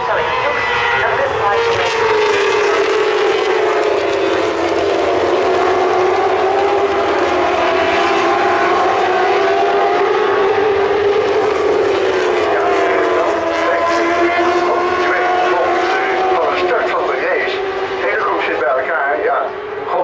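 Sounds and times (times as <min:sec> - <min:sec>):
racing motorcycle engines revving: 0:00.0 - 0:20.0.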